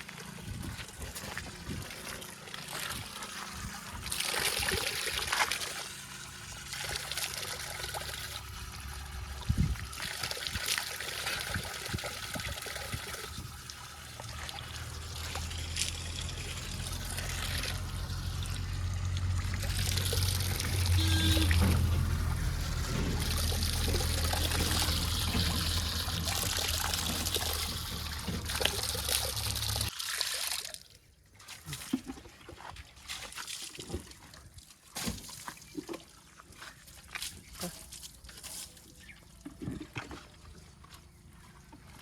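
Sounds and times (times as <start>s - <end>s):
soil pouring from bucket: 0.8s - 30.8s
diesel engine running low: 5.5s - 10.0s, 13.3s - 29.9s.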